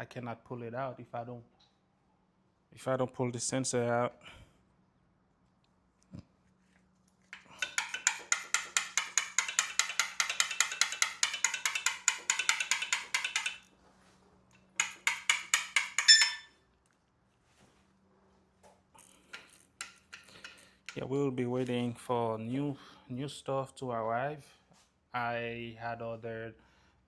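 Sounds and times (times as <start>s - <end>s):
hand ratchet clicking: 7.4s - 13.7s, 14.8s - 16.5s
brief metallic ring: 16.0s - 16.5s.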